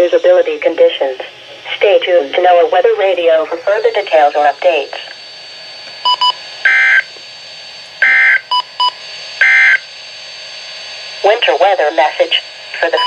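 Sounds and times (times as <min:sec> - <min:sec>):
buzzy digital data bursts: 0:00.1 - 0:05.5.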